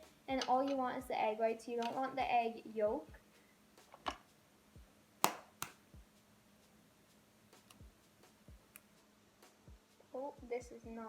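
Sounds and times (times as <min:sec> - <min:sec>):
eggs tapping and cracking: 0:05.2 - 0:05.8.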